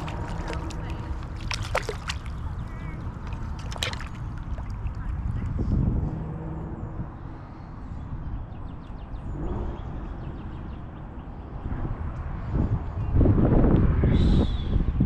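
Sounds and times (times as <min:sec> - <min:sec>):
flowing river water: 0:00.0 - 0:05.6
wind rumble on microphone: 0:00.0 - 0:15.0.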